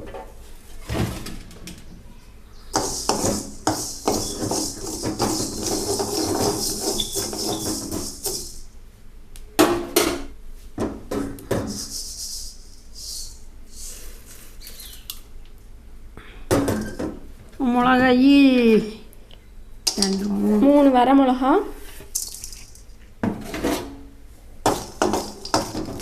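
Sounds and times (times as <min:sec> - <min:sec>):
steady hiss: 0:02.2 - 0:08.9, 0:11.3 - 0:15.0
spices stirred and scraped in pan: 0:02.7 - 0:08.7, 0:24.7 - 0:26.0.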